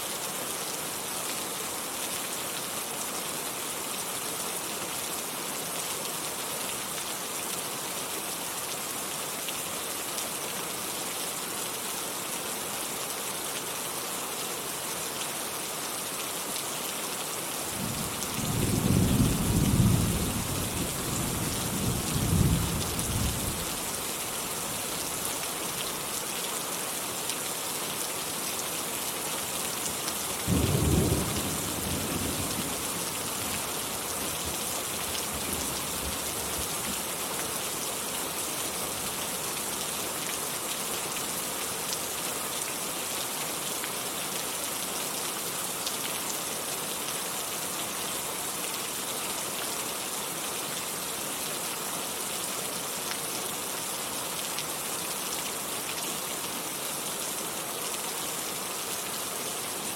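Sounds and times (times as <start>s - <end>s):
heavy rain hissing: 28.3s - 40.7s.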